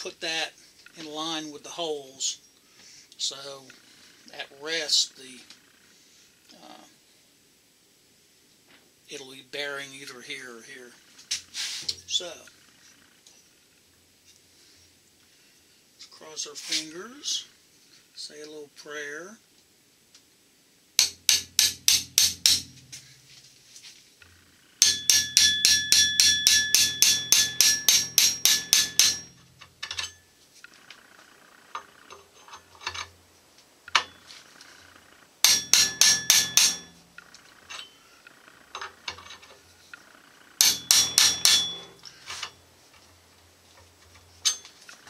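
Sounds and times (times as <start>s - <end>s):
hammer blows with metal clink: 21.0s - 23.4s, 24.8s - 30.2s, 35.4s - 37.1s, 40.6s - 42.5s.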